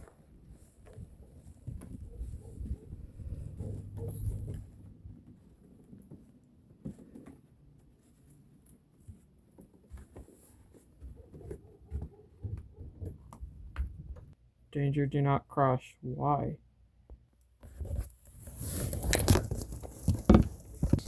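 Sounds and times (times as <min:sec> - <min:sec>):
rustling: 0:00.0 - 0:12.8, 0:17.6 - 0:21.0
footsteps: 0:09.0 - 0:13.3.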